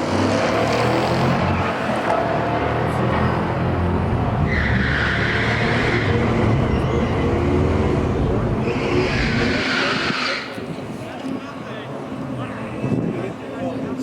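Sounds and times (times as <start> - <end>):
engines revving hard: 0.0 - 10.7.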